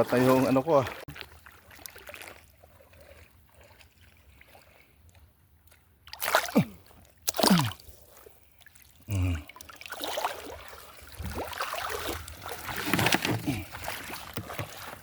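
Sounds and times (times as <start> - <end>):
shallow water sloshing: 0.0 - 15.0
loud water splashes: 6.2 - 7.8, 9.2 - 12.9.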